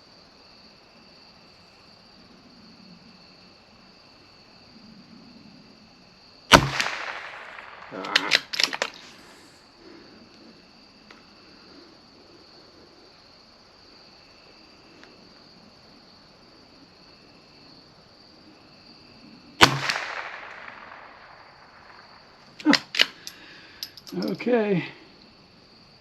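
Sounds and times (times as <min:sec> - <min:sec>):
rifle shot: 0:06.5 - 0:09.3, 0:19.6 - 0:23.2.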